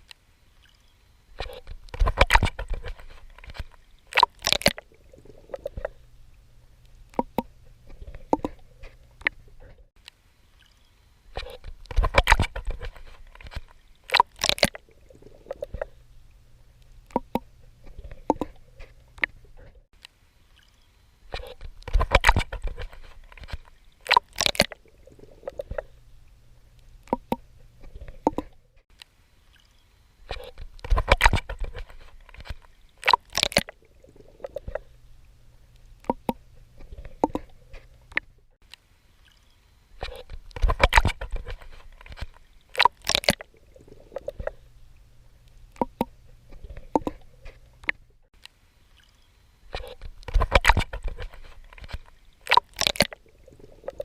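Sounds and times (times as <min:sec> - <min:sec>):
small clicks and bubbling: 0:00.0 - 0:54.0
swimming strokes splashing: 0:39.2 - 0:44.7, 0:49.0 - 0:54.0.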